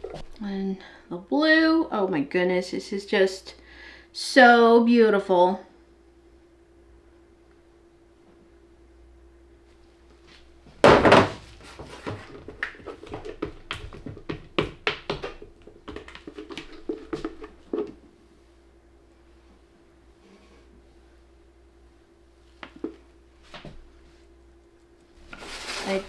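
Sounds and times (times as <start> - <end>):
spatula tapping and scraping: 11.8 - 18.0.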